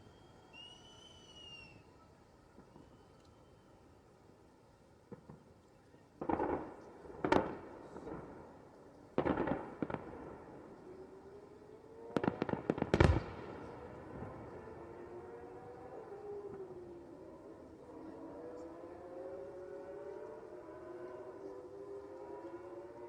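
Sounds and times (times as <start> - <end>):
fireworks bangs and crackling: 6.2 - 10.8, 12.1 - 14.7.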